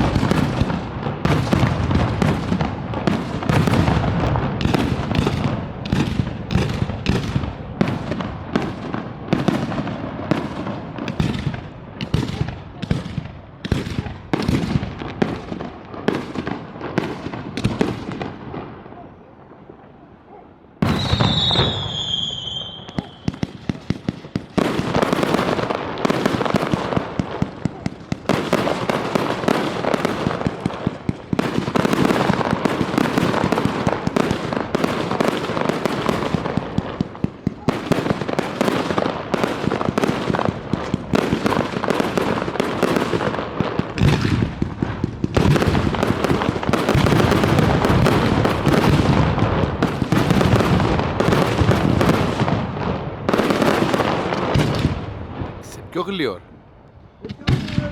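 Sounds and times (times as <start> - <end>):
fireworks crackling and bangs: 0.0 - 19.9, 20.7 - 57.9
firework whistle falling: 20.8 - 23.4.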